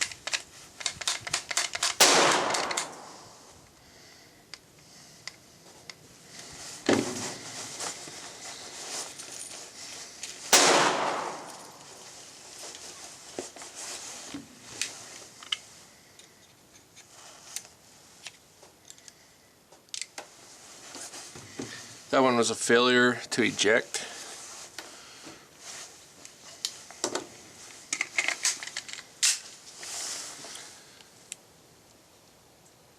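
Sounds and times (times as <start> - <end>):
sharp metallic clicks: 0.0 - 3.3
pistol shots: 2.0 - 3.4, 10.5 - 12.0.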